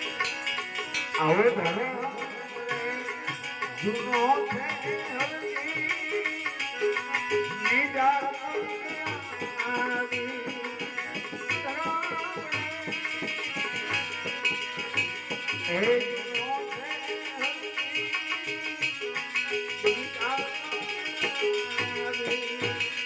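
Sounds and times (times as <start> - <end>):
tabla playing steady rhythm: 0.0 - 23.0.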